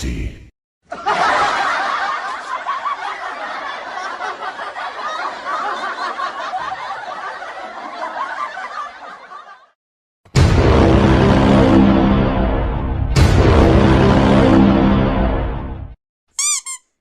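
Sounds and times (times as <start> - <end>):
crowd laughing: 0.8 - 9.8.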